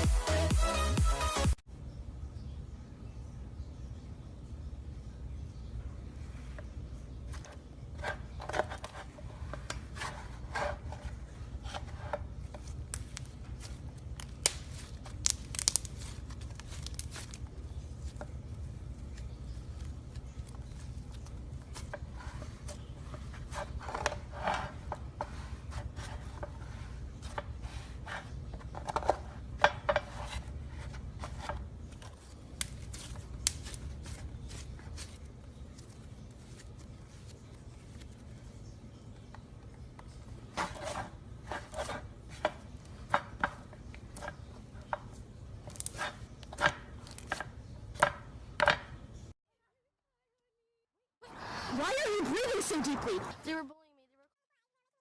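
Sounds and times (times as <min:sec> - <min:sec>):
slime squishing and popping: 0:14.2 - 0:17.3.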